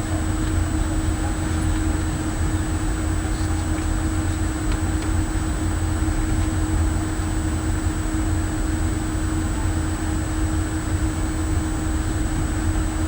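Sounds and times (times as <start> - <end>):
machinery rumble with hum: 0.0 - 13.0.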